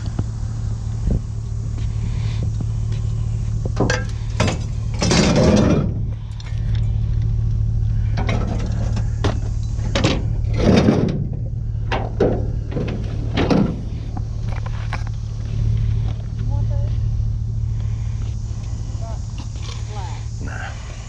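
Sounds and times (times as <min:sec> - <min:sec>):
vehicle engine idling: 0:00.0 - 0:21.0
scrap metal clanking and scraping: 0:03.7 - 0:07.0, 0:08.0 - 0:15.1.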